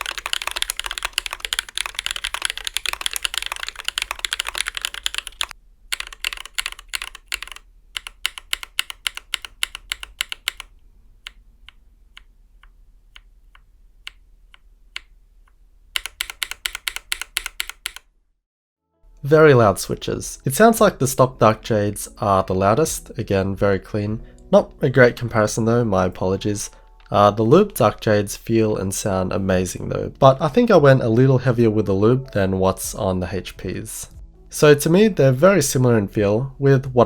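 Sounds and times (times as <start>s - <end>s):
mechanical keyboard typing: 0.0s - 15.1s, 16.0s - 18.1s.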